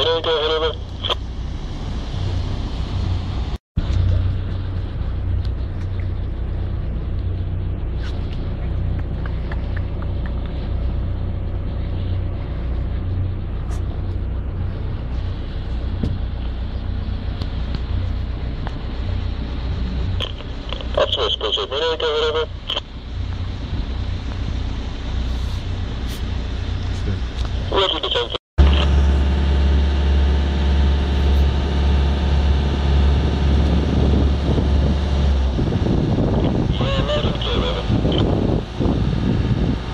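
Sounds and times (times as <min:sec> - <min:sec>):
boat engine humming at low revs: 0:00.0 - 0:39.9.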